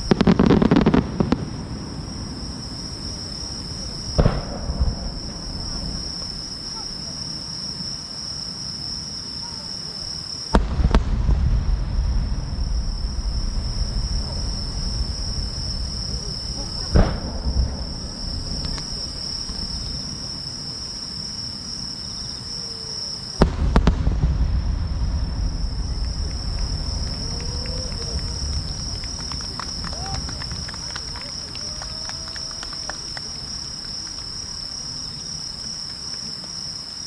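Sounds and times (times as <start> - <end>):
firework booms with rumble: 0.0 - 7.0, 10.5 - 20.4, 23.4 - 31.4
insect chorus chirring: 0.0 - 37.0.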